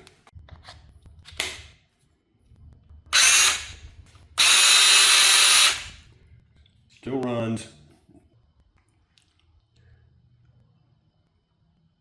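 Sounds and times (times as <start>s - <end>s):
battery chainsaw running: 3.2s - 3.8s, 4.4s - 6.0s.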